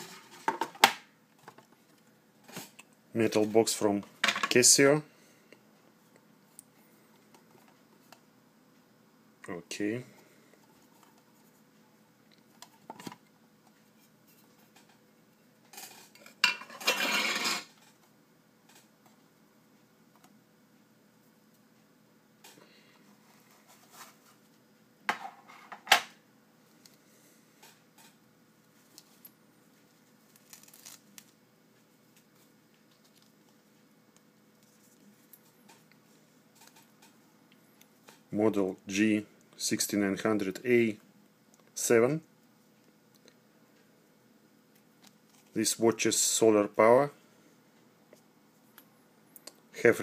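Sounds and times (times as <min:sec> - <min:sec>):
packaging rustling and crinkling: 0:30.2 - 0:31.4.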